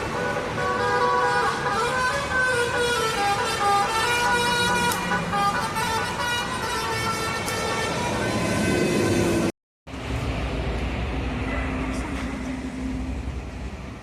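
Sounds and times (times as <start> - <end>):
multi-tone bus horn tune: 0.0 - 9.5
engine and road noise: 0.0 - 14.0.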